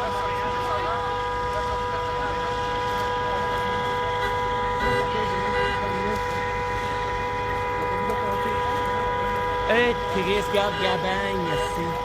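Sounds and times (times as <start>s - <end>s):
vehicle droning: 0.0s - 12.0s.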